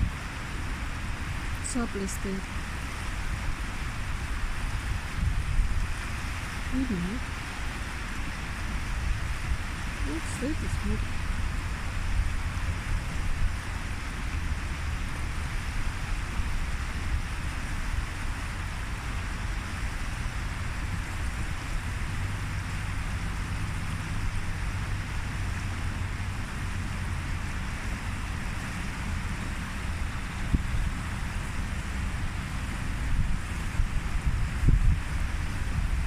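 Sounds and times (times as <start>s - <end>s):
flowing river water: 0.0s - 36.0s
wind buffeting microphone: 0.0s - 36.0s.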